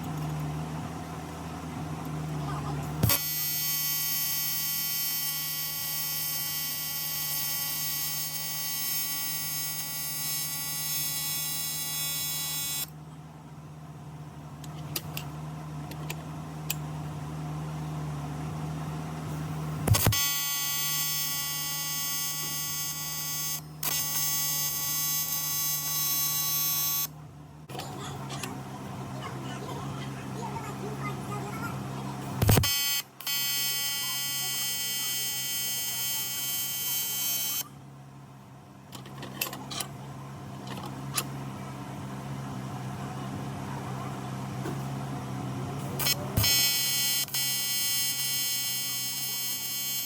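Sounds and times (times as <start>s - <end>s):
welding machine low hum: 0.0s - 13.0s, 14.2s - 28.7s, 32.3s - 37.8s, 44.7s - 50.0s
welding arc buzzing: 3.0s - 12.9s, 19.3s - 27.1s, 32.4s - 37.7s, 46.0s - 50.0s.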